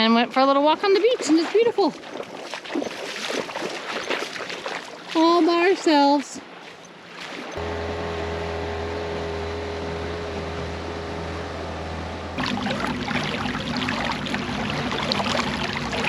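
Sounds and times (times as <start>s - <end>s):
water noise: 0.0s - 16.0s
boat motor running: 7.5s - 16.0s.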